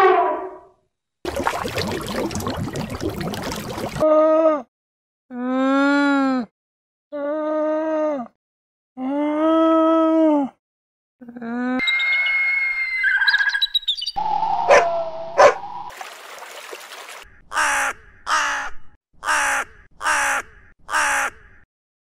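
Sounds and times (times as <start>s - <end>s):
harsh caws: 17.3s - 21.6s.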